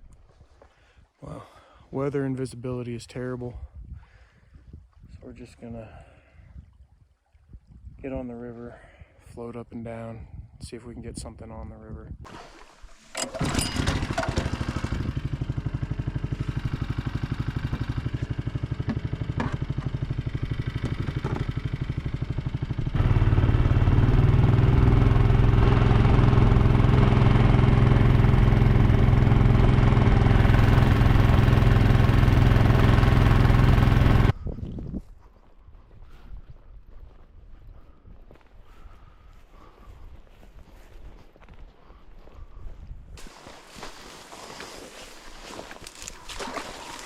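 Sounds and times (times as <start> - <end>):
small outboard motor running: 12.3 - 34.4, 43.2 - 47.0.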